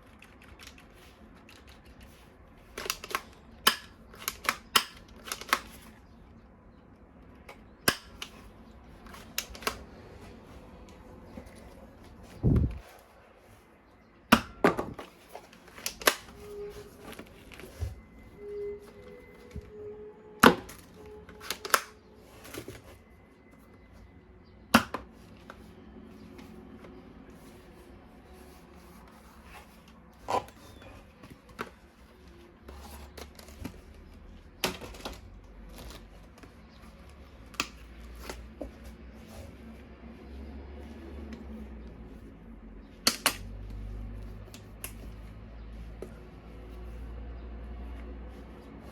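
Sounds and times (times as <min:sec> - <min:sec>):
plastic toy gun clicks and snaps: 0:02.8 - 0:05.7.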